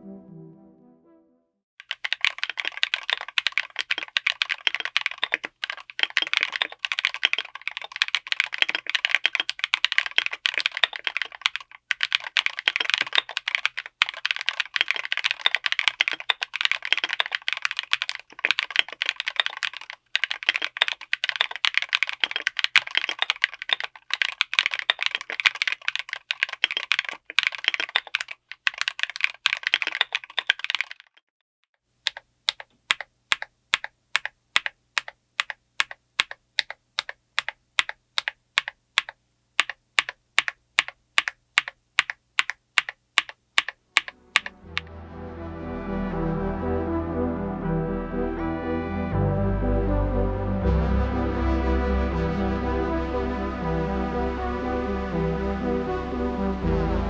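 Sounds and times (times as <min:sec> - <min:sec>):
fast typing on mechanical keyboard: 0:01.8 - 0:31.2, 0:32.0 - 0:44.8.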